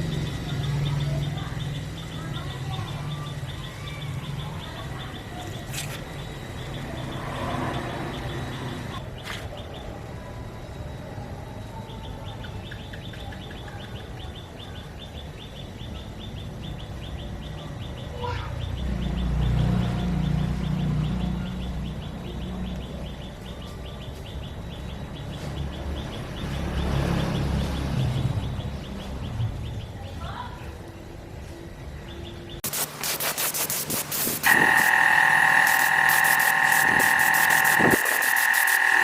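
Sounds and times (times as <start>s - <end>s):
rapid high chirps: 32.6s - 39.0s.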